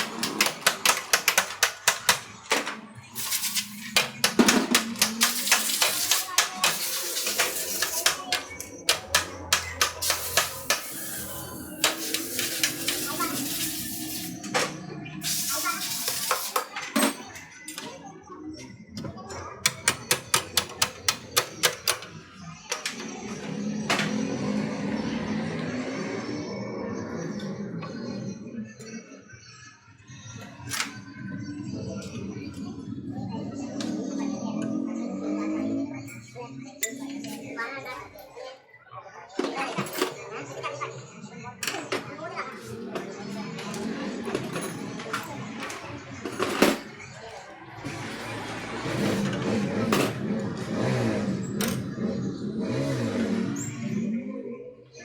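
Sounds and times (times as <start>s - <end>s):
hand tools clicking on metal: 0.0s - 2.6s, 3.2s - 14.2s, 19.6s - 22.1s.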